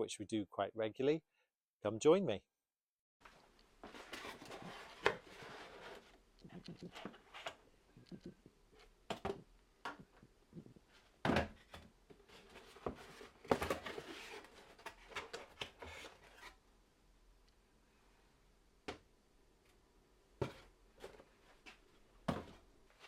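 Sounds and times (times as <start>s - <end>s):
objects being handled: 3.2s - 16.6s.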